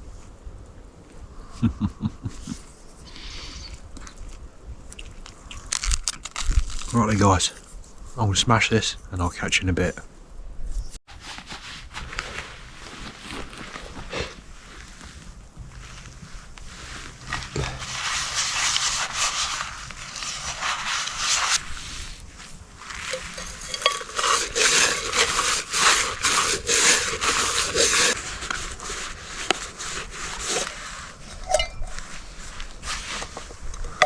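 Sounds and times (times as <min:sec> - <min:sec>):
pots and cutlery scrubbed and scraped: 0:17.2 - 0:21.6, 0:22.9 - 0:34.0
cookware clinking: 0:23.1 - 0:25.4.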